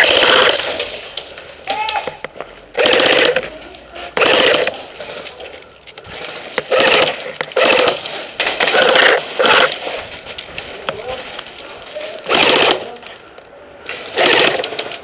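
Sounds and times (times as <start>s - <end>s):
airsoft guns firing bursts: 0.0s - 0.9s, 2.7s - 3.5s, 4.2s - 5.2s, 6.1s - 10.0s, 12.2s - 13.0s, 14.0s - 15.0s.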